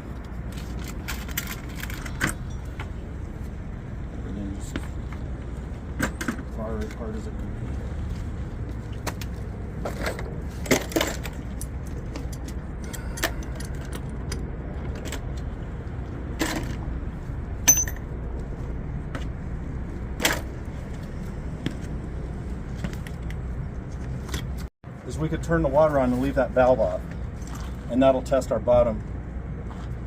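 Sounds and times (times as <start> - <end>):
metal clinks and knocks: 17.6 - 18.2
metal ringing ping: 17.7 - 18.1.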